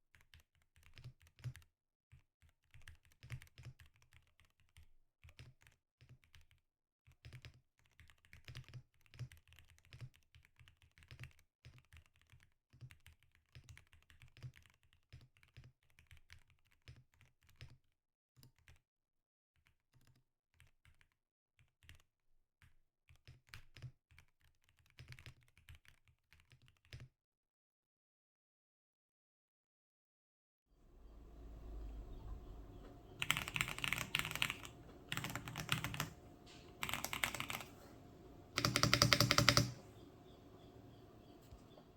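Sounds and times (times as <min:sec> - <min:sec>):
typing on mechanical keyboard: 0:31.1 - 0:41.9.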